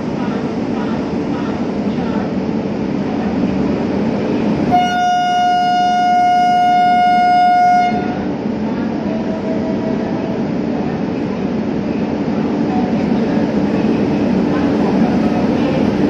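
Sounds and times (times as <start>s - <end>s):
train running rumble: 0.0s - 16.0s
locomotive air horn blast: 4.7s - 8.3s.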